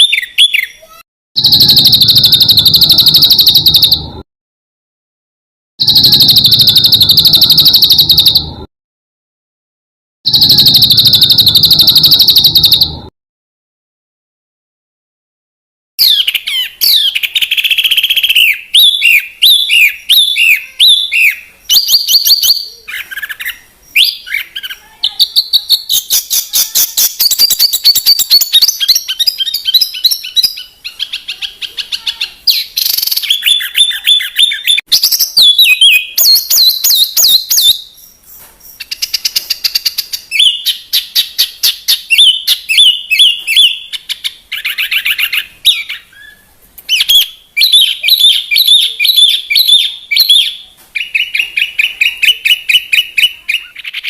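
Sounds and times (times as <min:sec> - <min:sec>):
songbird singing: 0:16.0 - 0:54.0.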